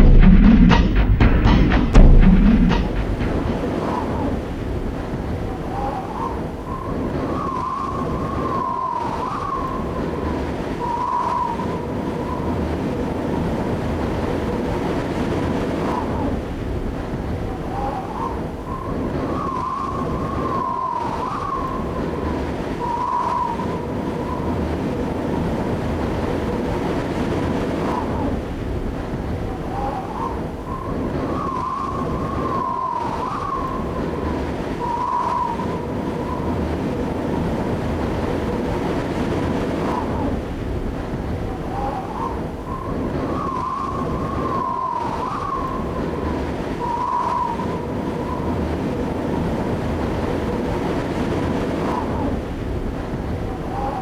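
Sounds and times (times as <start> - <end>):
rushing drone: 0.0 - 4.5.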